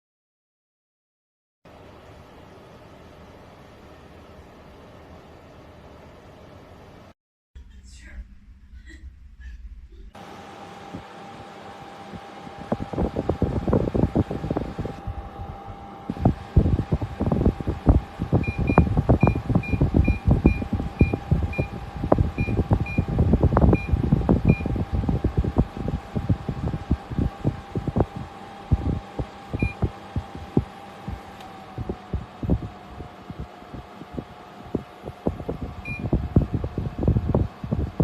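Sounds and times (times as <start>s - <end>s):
steady hum: 1.7s - 38.0s
low thumps and knocks: 16.2s - 38.0s.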